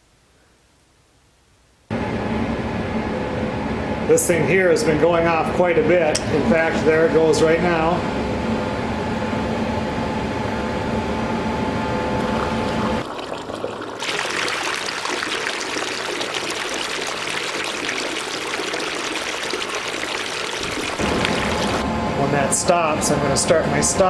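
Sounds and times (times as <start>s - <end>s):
pump motor hum: 9.9s - 24.0s
water pouring and splashing: 12.2s - 21.8s.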